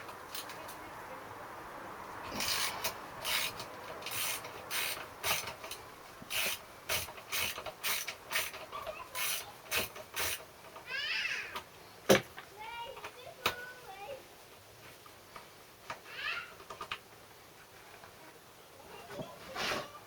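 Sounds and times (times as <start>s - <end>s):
ratchet wrench strokes: 2.3s - 8.6s, 9.2s - 10.5s.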